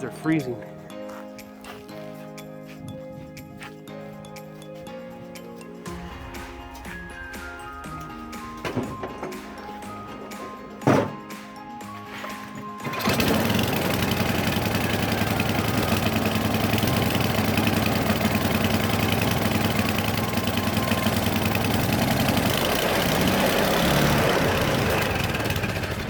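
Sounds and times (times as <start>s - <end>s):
small gasoline engine running: 12.4s - 26.0s.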